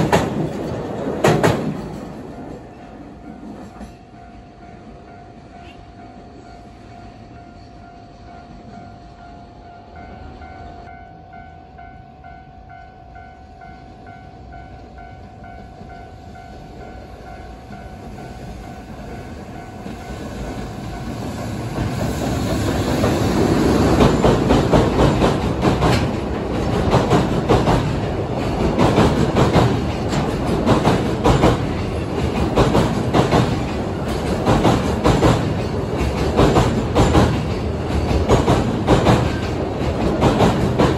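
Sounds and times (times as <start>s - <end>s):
train passing: 0.0s - 40.9s
level crossing warning bell: 3.2s - 21.1s
wheels clattering over rail joints: 19.9s - 40.9s.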